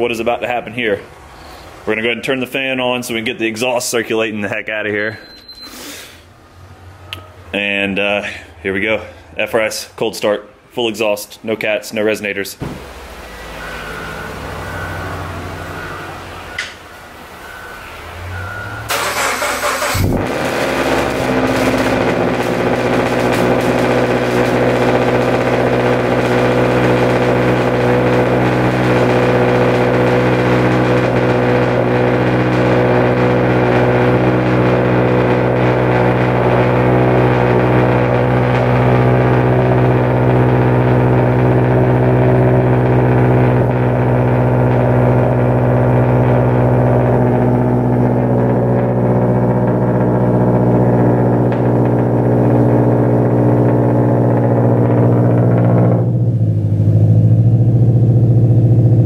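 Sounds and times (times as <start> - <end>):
car engine idling loudly: 18.9 - 59.0.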